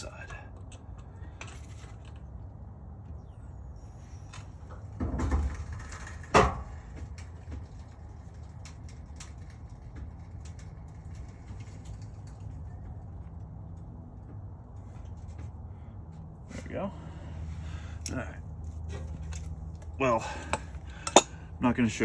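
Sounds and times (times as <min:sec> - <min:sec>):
steady low hum: 0:00.0 - 0:08.2.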